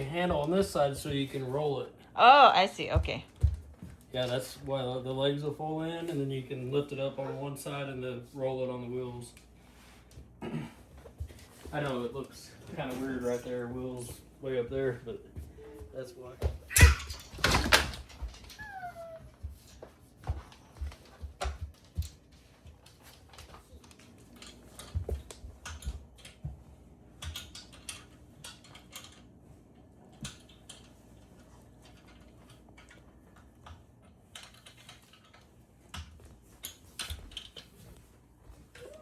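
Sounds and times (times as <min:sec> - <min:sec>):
clicks and knocks of parts handled: 0:27.2 - 0:29.4, 0:30.1 - 0:38.0.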